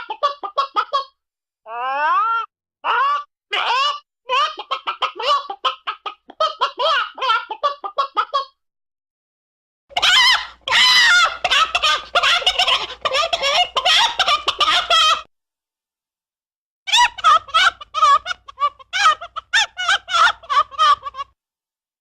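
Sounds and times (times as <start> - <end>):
chicken clucking: 0.0 - 1.1, 4.3 - 8.6, 10.0 - 15.3, 16.9 - 21.3
chicken squawking: 0.0 - 8.6, 9.9 - 15.3, 16.9 - 21.3.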